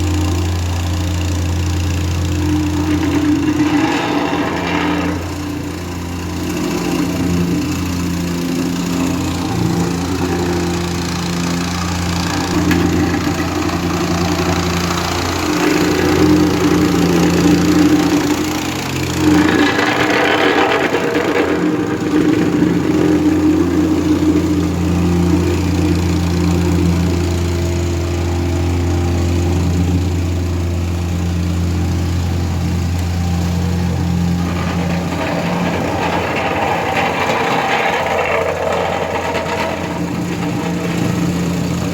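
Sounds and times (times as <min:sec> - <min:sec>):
diesel engine running steadily: 0:00.0 - 0:41.9.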